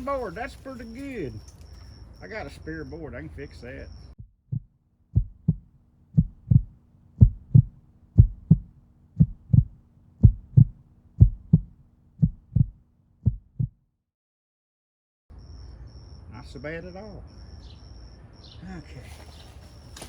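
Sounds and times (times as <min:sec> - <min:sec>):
faint steady hum: 0:00.0 - 0:13.2
heartbeat thumps: 0:04.2 - 0:13.8.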